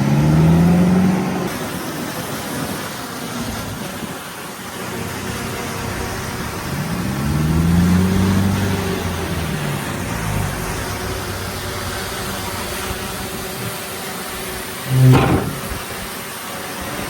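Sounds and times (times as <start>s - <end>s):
heavy diesel engine revving: 5.7s - 13.7s, 14.8s - 15.8s.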